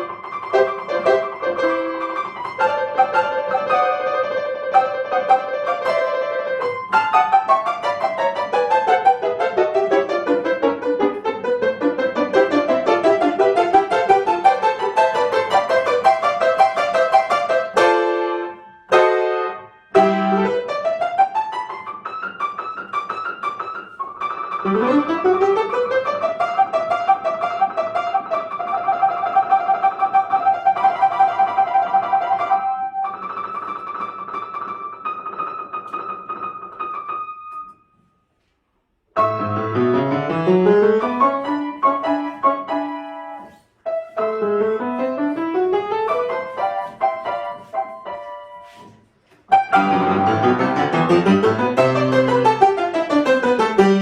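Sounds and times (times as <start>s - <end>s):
solo piano playing: 0.0s - 38.1s, 39.1s - 54.0s.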